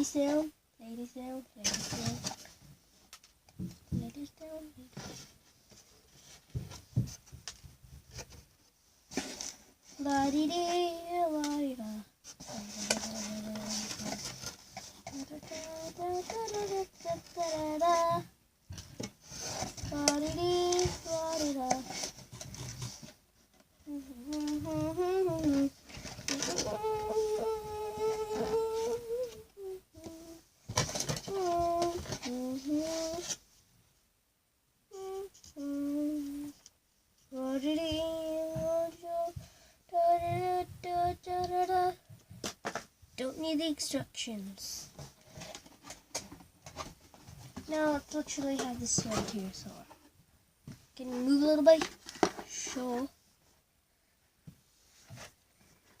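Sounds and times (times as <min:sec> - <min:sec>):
girl singing a wordless tune: 0:00.0 - 0:02.5, 0:03.6 - 0:05.2, 0:09.2 - 0:18.4, 0:19.4 - 0:22.1, 0:23.7 - 0:33.4, 0:34.9 - 0:42.3, 0:43.1 - 0:45.1, 0:47.6 - 0:50.1, 0:50.9 - 0:53.2
girl humming a tune: 0:23.8 - 0:30.4, 0:31.3 - 0:33.3, 0:34.9 - 0:36.6, 0:37.3 - 0:42.0.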